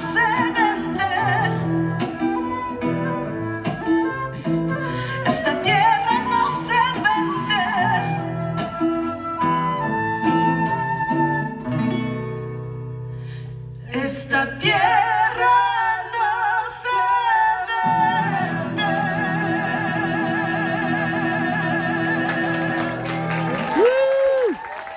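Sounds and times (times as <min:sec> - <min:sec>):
live band playing: 0:00.0 - 0:07.3, 0:21.8 - 0:24.0.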